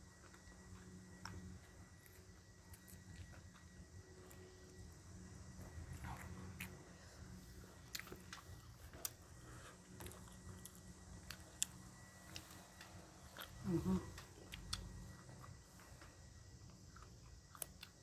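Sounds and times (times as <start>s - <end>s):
person chewing food: 0.2s - 4.8s, 5.6s - 7.1s, 7.8s - 18.0s.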